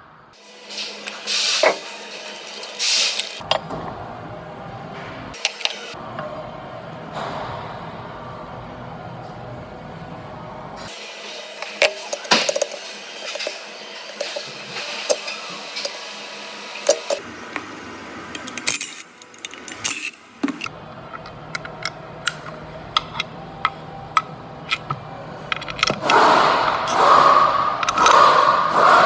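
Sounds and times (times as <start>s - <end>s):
metallic clicks and clinks: 1.0s - 3.5s, 18.4s - 23.3s.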